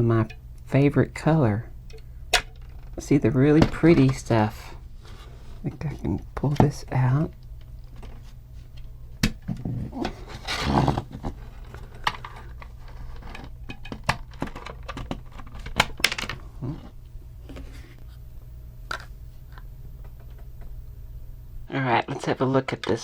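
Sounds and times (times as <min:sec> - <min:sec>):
plastic parts clicking: 0:01.9 - 0:04.4, 0:06.1 - 0:16.4
rustling scrape: 0:04.8 - 0:05.6, 0:09.6 - 0:13.6.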